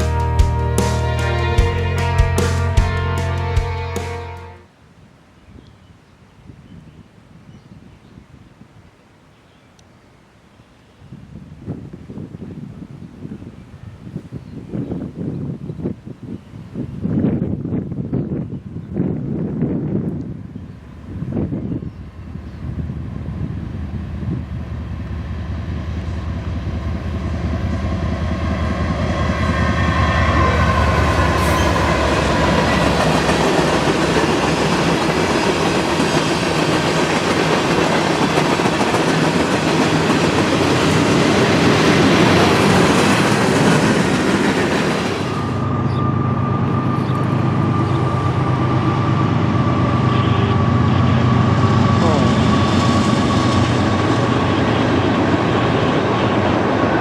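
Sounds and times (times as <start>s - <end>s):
locomotive engine hum: 0.0s - 4.6s, 20.1s - 57.0s
train wheels clacking on rails: 26.0s - 45.6s.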